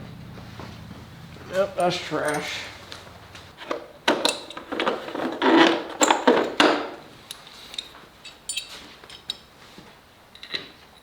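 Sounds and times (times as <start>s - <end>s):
parts and tools being handled: 3.5s - 11.0s.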